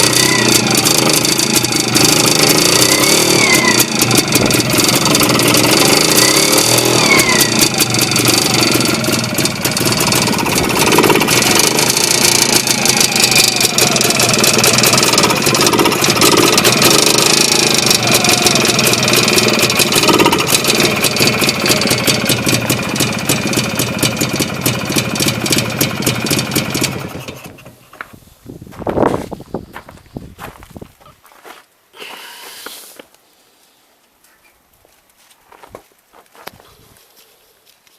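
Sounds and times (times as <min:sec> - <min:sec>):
fast even ticking: 0:00.0 - 0:27.1
engine running: 0:00.0 - 0:28.0.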